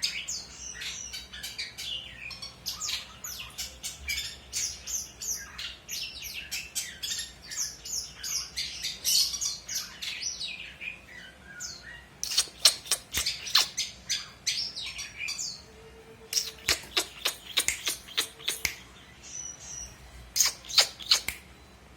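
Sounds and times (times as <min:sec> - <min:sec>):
shrike singing: 0:00.0 - 0:21.7
harsh clicking bird notes: 0:12.2 - 0:13.9, 0:16.3 - 0:18.8, 0:20.4 - 0:21.5.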